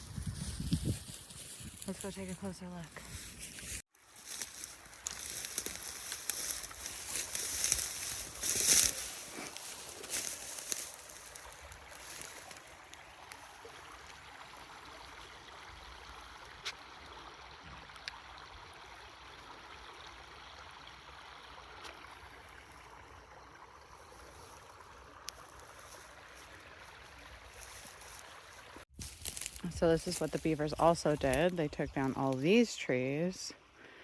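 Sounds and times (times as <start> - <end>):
rustling: 0.0 - 12.6, 29.0 - 32.6
creek water running: 0.0 - 34.0.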